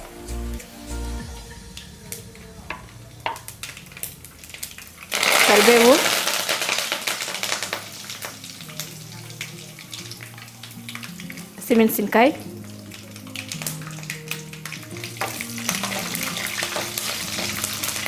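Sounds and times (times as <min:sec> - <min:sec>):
leaves sizzling in oil: 0:00.8 - 0:18.0
seeds popping in hot oil: 0:01.7 - 0:18.0.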